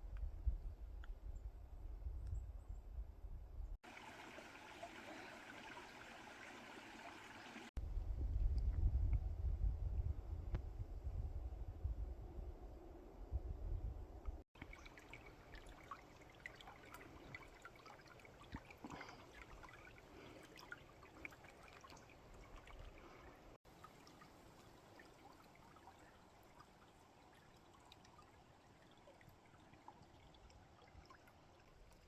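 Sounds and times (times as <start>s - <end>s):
water trickling: 3.8s - 7.8s, 14.6s - 32.0s
small clicks and splashes: 14.3s - 32.0s.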